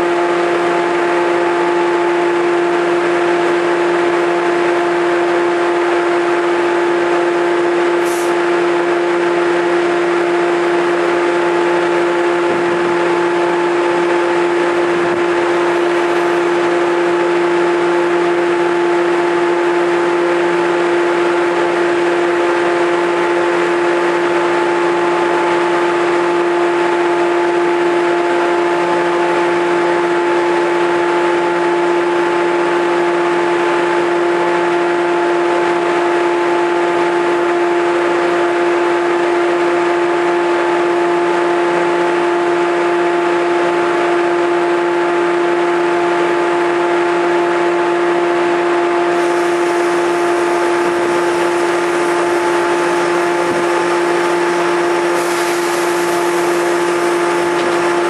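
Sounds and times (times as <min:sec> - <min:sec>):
level-crossing alarm ringing: 0:49.1 - 0:58.0.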